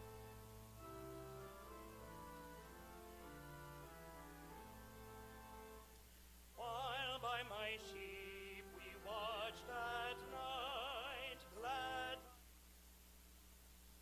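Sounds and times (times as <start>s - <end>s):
sustained keyboard chords: 0.0s - 6.0s
person singing with vibrato: 6.6s - 12.4s.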